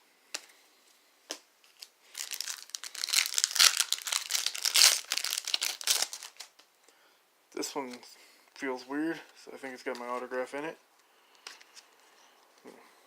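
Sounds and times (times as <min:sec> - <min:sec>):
plastic wrapper crinkling and tearing: 0:01.6 - 0:06.6.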